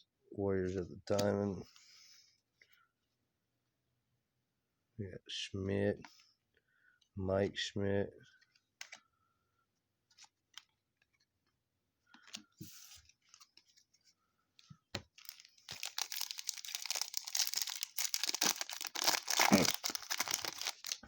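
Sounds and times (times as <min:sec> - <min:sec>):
wrapper tearing and crinkling: 0:15.2 - 0:21.0.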